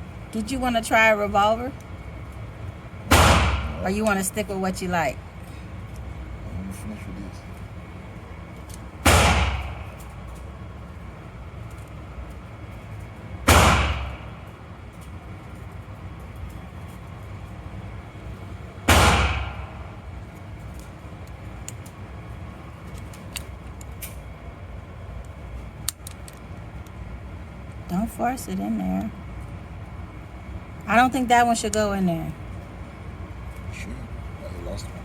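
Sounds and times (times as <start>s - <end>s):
handgun shots echoing: 3.1s - 3.8s, 9.0s - 10.1s, 13.5s - 14.4s, 18.9s - 20.0s.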